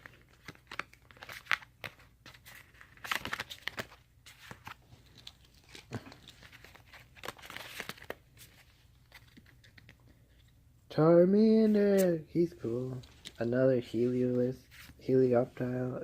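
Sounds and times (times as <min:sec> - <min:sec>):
cards clicking and crinkling: 0:00.0 - 0:10.6, 0:12.9 - 0:13.5.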